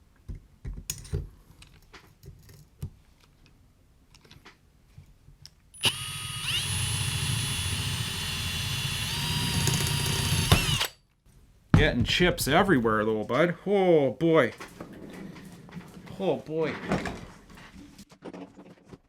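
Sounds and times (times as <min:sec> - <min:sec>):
electric drill whining: 0:05.8 - 0:11.0.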